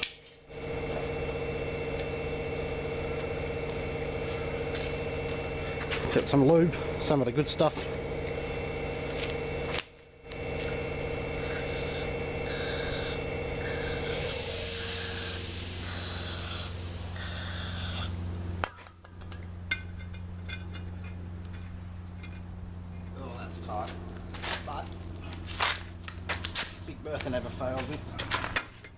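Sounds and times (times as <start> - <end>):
steady machine hum: 0.0 - 28.9
hissy bursts: 11.4 - 18.6.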